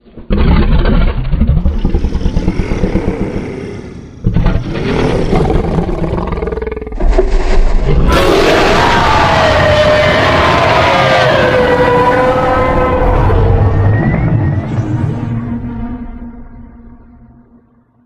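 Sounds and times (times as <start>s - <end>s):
deep rough monster growls: 0.0s - 14.2s
high-pitched monster roar: 1.9s - 7.0s, 7.9s - 14.2s.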